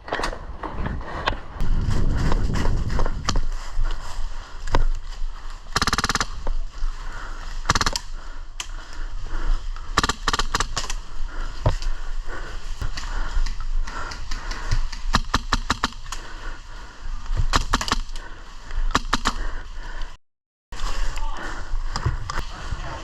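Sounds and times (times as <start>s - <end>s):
airsoft guns firing bursts: 5.7s - 6.4s, 7.6s - 8.1s, 10.0s - 10.9s, 14.3s - 16.2s.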